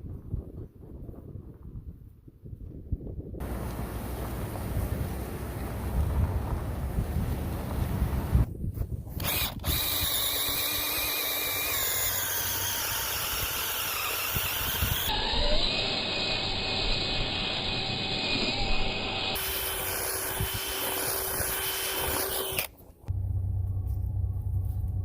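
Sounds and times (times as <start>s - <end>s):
electric power tool whining: 9.2s - 22.7s.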